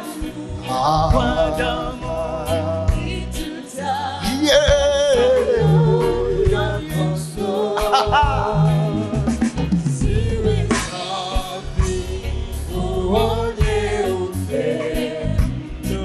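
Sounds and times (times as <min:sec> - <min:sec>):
congregation singing worship song: 0:00.0 - 0:16.0.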